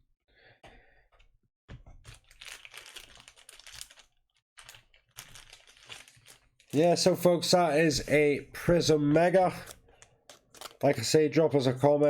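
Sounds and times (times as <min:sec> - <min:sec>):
trading cards rustling and crinkling: 0:02.0 - 0:07.1, 0:09.1 - 0:11.2.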